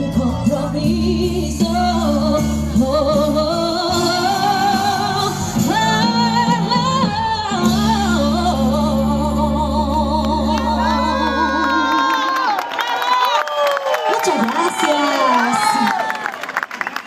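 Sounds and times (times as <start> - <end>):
person singing long notes: 0.0 - 12.5.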